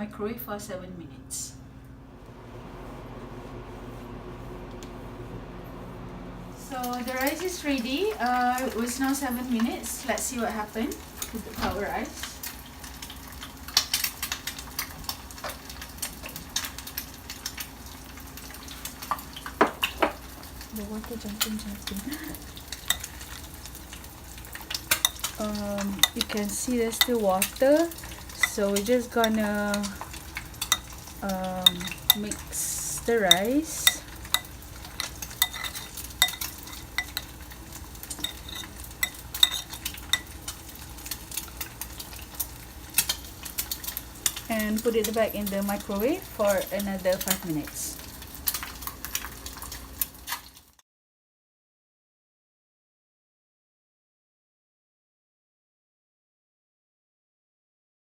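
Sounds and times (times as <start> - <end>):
spoon stirring wet rice: 21.8 - 44.5.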